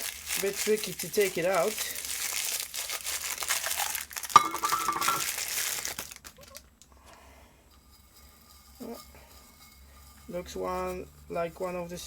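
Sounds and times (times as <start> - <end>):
plastic packaging crinkling: 0.0 - 7.0.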